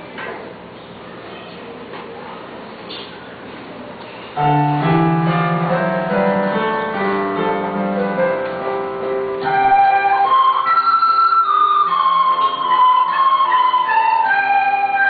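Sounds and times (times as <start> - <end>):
room noise: 0.0 - 15.0
piano chords over bass line: 4.4 - 15.0
recorders playing sustained notes: 4.4 - 15.0.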